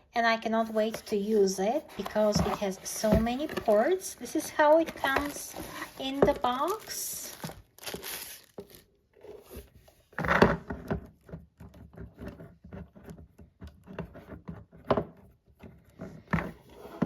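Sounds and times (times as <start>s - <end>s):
box rubbing and scraping: 0.6s - 7.0s, 16.4s - 17.0s.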